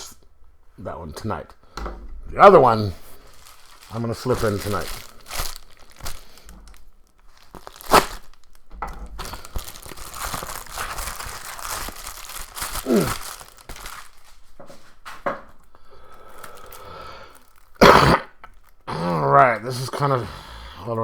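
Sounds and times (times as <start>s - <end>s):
plastic packaging crinkling: 2.4s - 17.8s, 18.4s - 18.9s.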